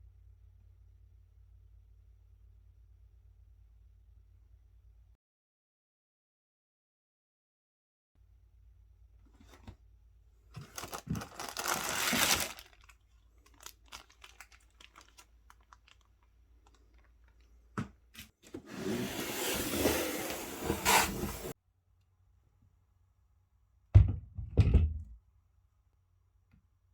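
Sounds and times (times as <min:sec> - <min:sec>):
packaging tearing and rustling: 0:10.6 - 0:17.1.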